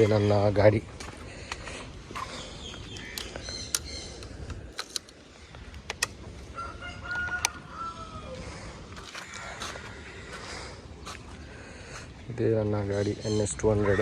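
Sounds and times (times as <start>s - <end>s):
sharp clicks: 2.9s - 6.3s
rooster crowing: 6.5s - 8.6s.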